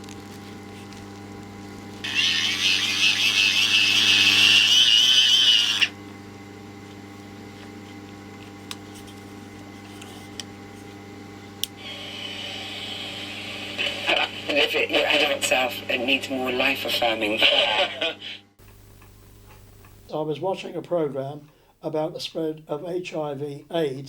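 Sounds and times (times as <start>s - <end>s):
wind-up radio whirring: 0.0s - 6.0s, 11.6s - 19.9s.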